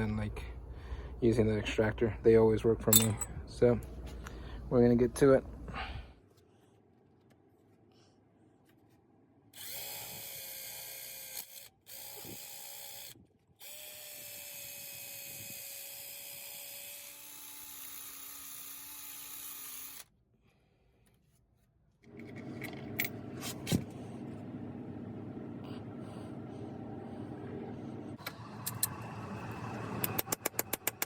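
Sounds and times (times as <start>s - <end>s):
power drill drilling metal: 9.6s - 20.1s
lower rougher running sound: 22.1s - 30.4s
sharp clicks: 30.0s - 31.0s.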